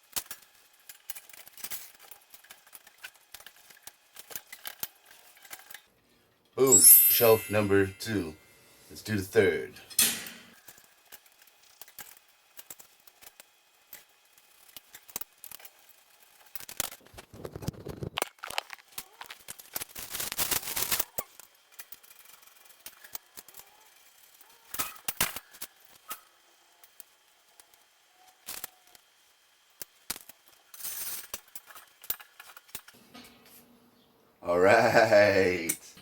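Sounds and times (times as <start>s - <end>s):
clicks and knocks of shelving parts: 9.8s - 10.6s.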